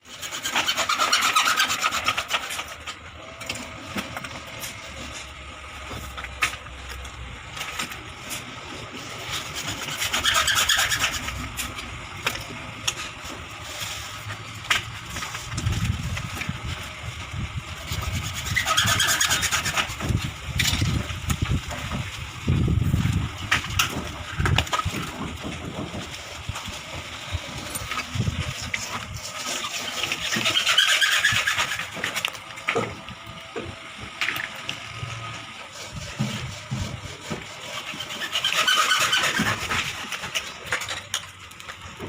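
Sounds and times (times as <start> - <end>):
rubbing and scraping: 0.0 - 32.9, 35.1 - 41.4
low rumbling: 19.8 - 29.4.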